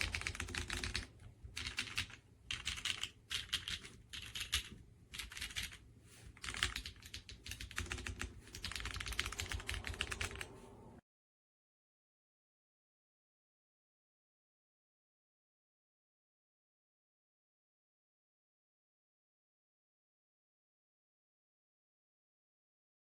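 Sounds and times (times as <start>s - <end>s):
mechanical keyboard typing: 0.0s - 5.8s, 6.4s - 10.6s.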